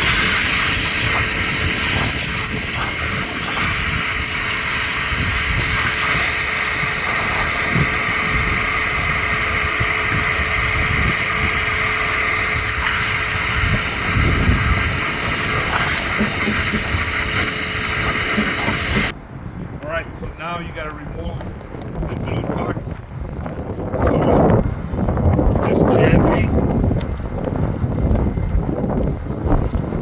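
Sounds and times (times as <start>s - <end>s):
machine rushing noise: 0.0s - 19.2s.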